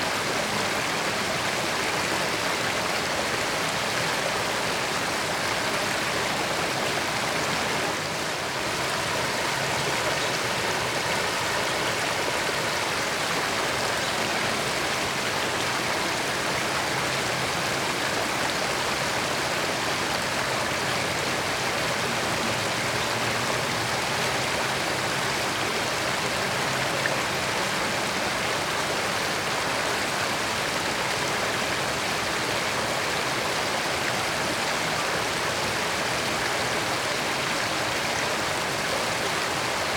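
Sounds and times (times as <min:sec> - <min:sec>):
water running over rocks: 0:00.0 - 0:39.9.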